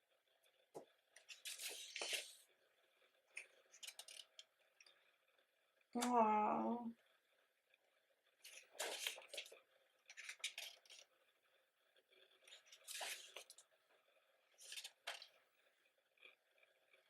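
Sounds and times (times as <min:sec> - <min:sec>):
pages turning: 0:01.2 - 0:02.4, 0:03.4 - 0:04.4, 0:08.4 - 0:11.0, 0:12.4 - 0:13.6, 0:14.6 - 0:15.4.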